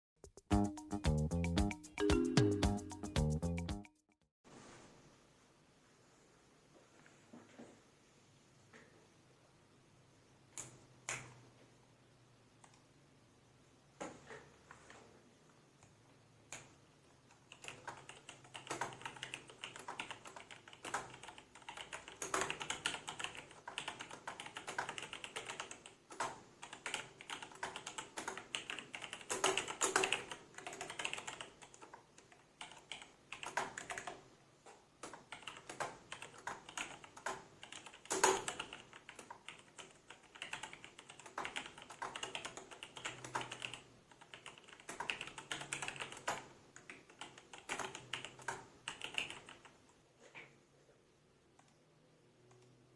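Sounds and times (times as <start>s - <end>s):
mechanical keyboard typing: 17.3s - 34.2s, 35.0s - 49.8s.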